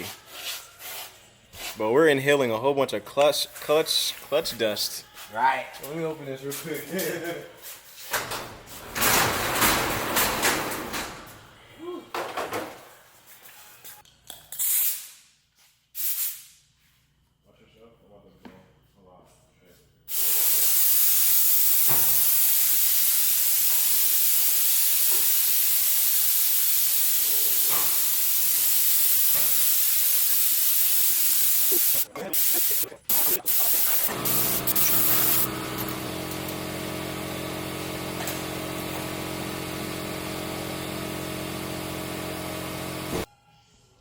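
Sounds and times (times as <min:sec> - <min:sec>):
loud spraying hiss: 0:20.1 - 0:35.6
motor humming: 0:33.3 - 0:43.3.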